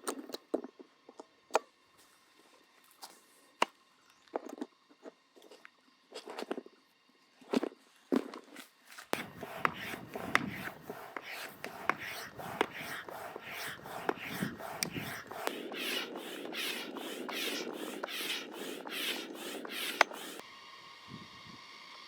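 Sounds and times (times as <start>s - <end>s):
rhythmic rubbing and scraping: 9.2s - 20.4s.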